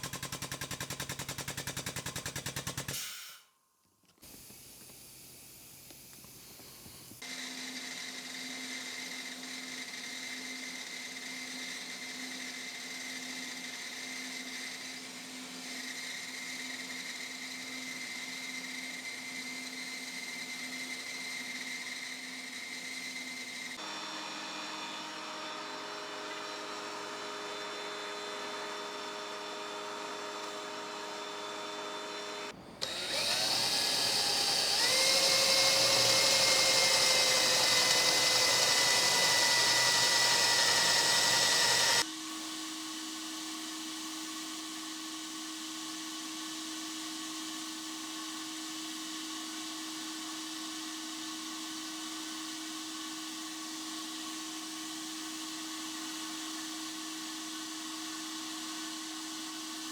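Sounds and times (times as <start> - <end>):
power tool motor whining: 15.6 - 42.1.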